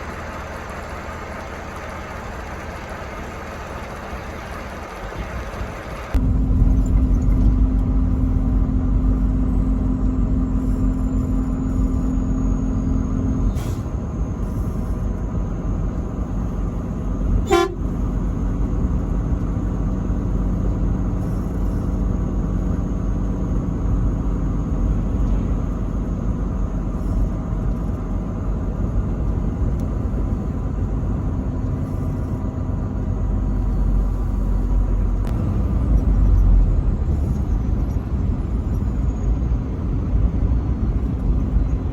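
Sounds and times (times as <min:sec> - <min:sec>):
truck rumble: 0:00.0 - 0:41.9
truck horn blast: 0:17.4 - 0:18.1.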